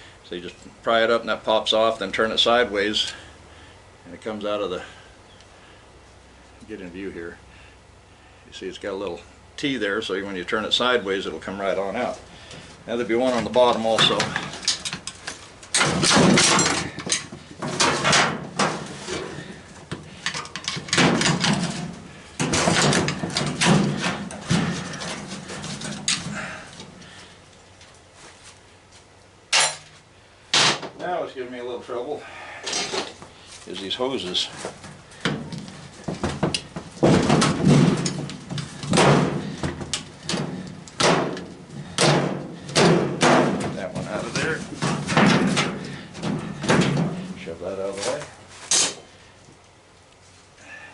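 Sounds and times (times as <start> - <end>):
metal tool clanking and scraping: 13.2 - 19.5, 20.2 - 26.3, 29.5 - 29.9, 32.6 - 33.2, 48.0 - 49.1
washing machine parts clattering: 13.2 - 26.5, 35.2 - 47.4.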